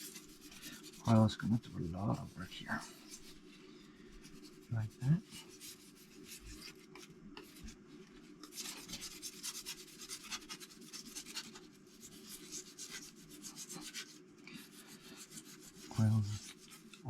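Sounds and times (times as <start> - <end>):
wire brush scrubbing metal: 0.0 - 3.4, 8.4 - 17.0.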